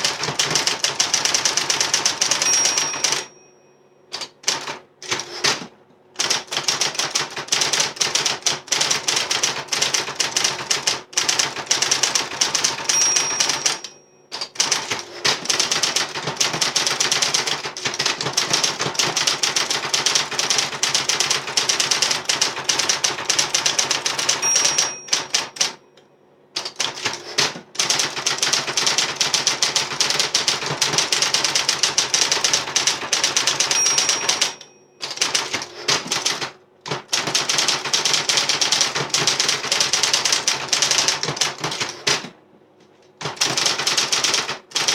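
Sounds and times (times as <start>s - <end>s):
typewriter key strikes: 0.0s - 3.4s, 4.1s - 25.8s, 26.6s - 42.3s, 43.2s - 44.9s
typewriter bell ringing: 0.1s - 4.3s, 11.4s - 25.8s, 27.8s - 36.4s.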